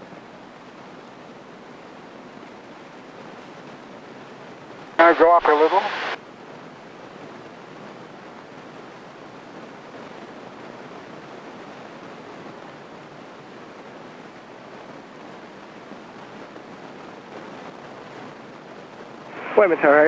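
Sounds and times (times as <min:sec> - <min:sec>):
airplane engine and airflow noise: 0:00.0 - 0:20.0.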